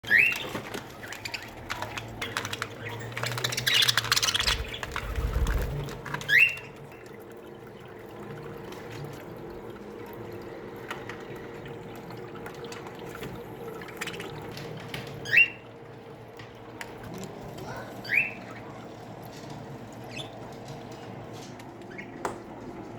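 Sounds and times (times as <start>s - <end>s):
budgerigars clicking and chirping: 0.0s - 7.1s, 13.6s - 15.7s, 17.6s - 22.4s.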